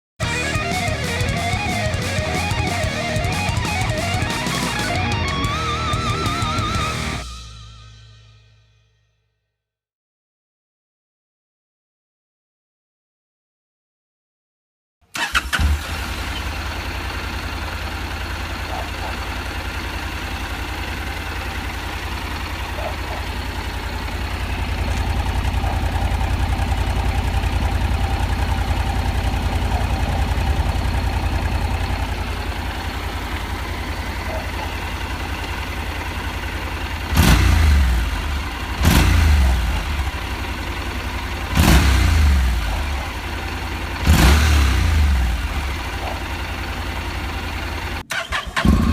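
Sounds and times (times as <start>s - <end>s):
motorcycle engine idling: 0.2s - 8.3s, 16.0s - 48.9s
engine revving: 0.2s - 8.4s, 22.3s - 48.9s.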